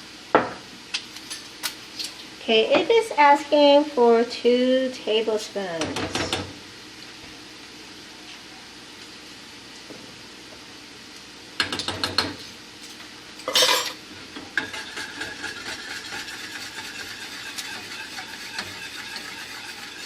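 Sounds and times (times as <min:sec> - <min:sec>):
metal utensils clattering on pot: 0:13.4 - 0:14.0
spoon stirring in pot: 0:14.4 - 0:20.0
utensil scraping pot: 0:14.6 - 0:20.0.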